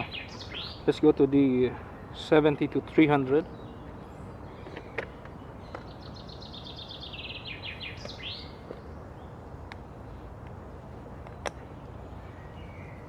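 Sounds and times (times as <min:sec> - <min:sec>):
songbird trilling: 0:00.0 - 0:09.4.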